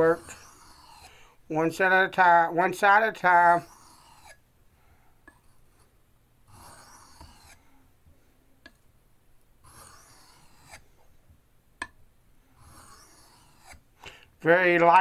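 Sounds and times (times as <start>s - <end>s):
knife scraping on sharpening stone: 0.2s - 1.1s, 3.6s - 4.4s, 6.5s - 7.6s, 9.6s - 10.8s, 12.6s - 13.8s.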